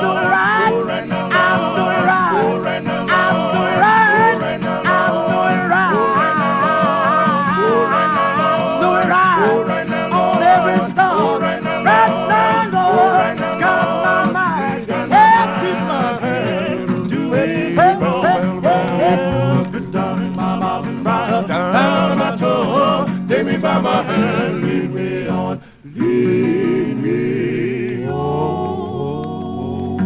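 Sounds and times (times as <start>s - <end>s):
male quartet singing gospel harmony: 0.0s - 30.0s.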